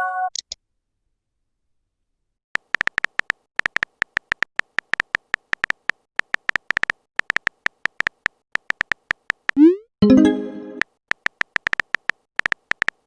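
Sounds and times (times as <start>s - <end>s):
phone keyboard typing clicks: 2.6s - 9.6s, 10.8s - 13.0s.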